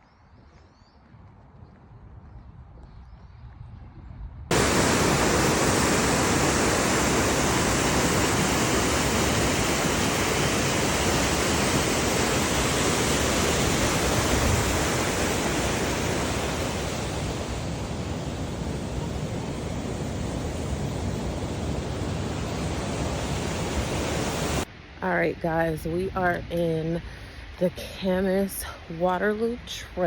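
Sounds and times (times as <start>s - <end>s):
loud rushing noise: 4.5s - 24.7s.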